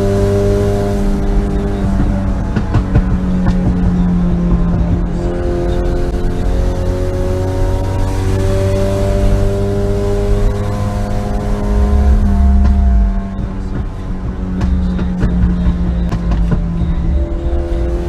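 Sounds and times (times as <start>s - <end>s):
car engine loud rumble: 0.0s - 18.0s
exhaust pops and crackles: 1.2s - 6.4s.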